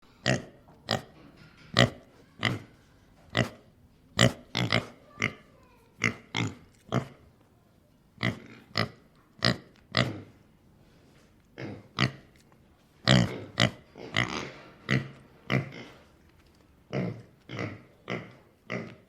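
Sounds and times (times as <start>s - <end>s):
pig grunting: 11.6s - 12.2s, 13.0s - 16.1s, 16.9s - 19.0s.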